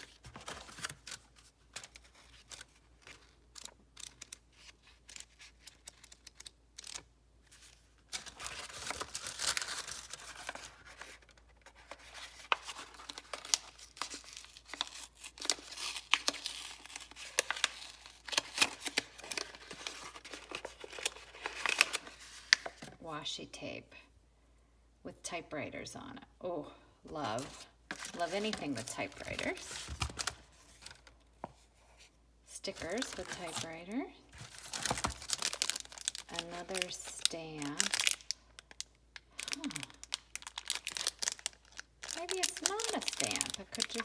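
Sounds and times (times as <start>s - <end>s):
packaging clicks and rustles: 0.0s - 22.9s, 27.1s - 31.3s, 32.6s - 44.0s
wrap crinkling and tearing: 12.4s - 22.6s, 32.7s - 44.0s.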